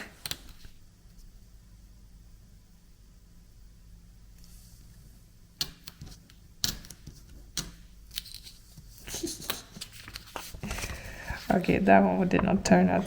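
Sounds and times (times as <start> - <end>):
tape rustling and ripping: 8.1 - 10.9.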